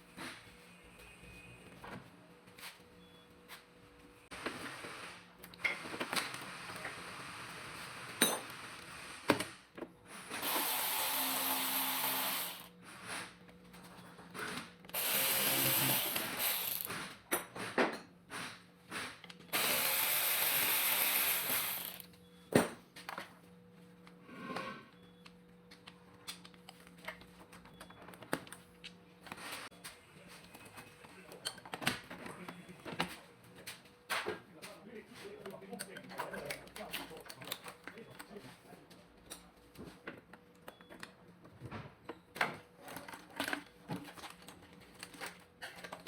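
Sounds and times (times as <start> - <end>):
power tool running: 10.4 - 12.7, 15.0 - 16.9, 19.5 - 22.1.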